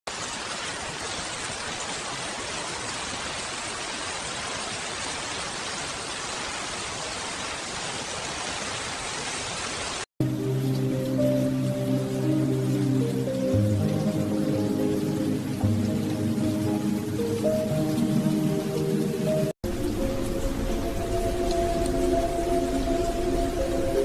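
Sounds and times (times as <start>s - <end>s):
steady rain: 0.1s - 24.0s
soft music: 10.2s - 24.0s.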